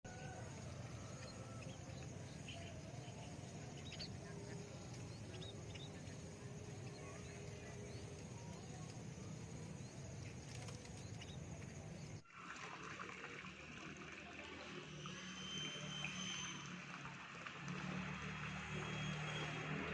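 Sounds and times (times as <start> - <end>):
bird chirps: 0.1 - 12.2
hissy background noise: 0.1 - 12.2.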